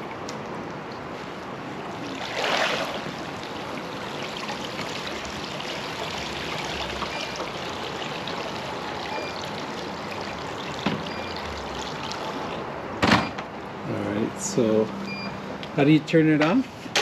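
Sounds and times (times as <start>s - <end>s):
water trickling and splashing: 0.0s - 12.8s.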